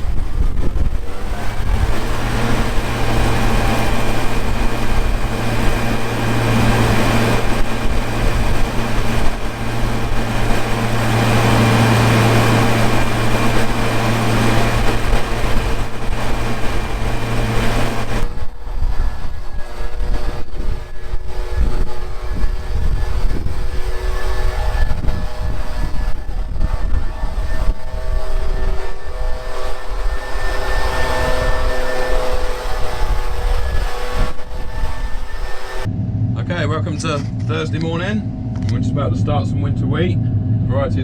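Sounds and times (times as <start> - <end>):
diesel farm machinery hum: 0.0 - 41.0
mechanical rush: 0.0 - 41.0.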